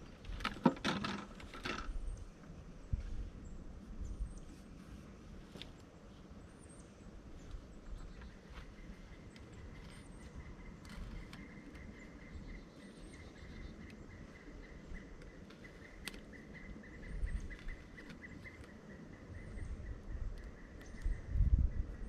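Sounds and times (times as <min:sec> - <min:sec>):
small bird chirp: 0:06.6 - 0:22.0.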